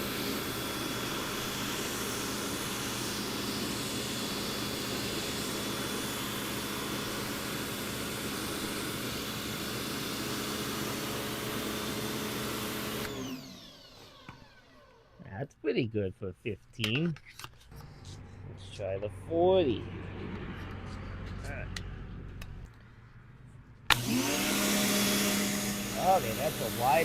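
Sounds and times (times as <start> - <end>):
pressure washer motor hum: 0.0 - 15.2, 23.9 - 27.0.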